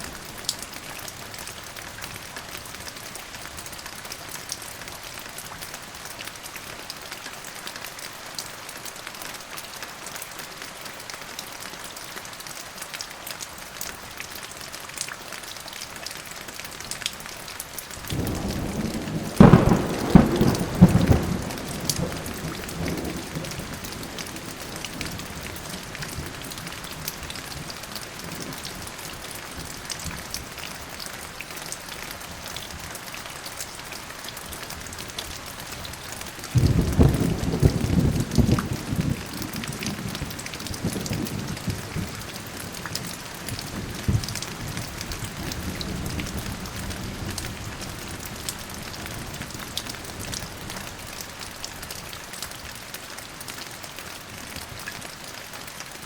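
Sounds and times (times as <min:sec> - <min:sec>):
steady rain falling: 0:00.0 - 0:56.0
thunderclap: 0:18.1 - 0:23.6, 0:36.5 - 0:42.2.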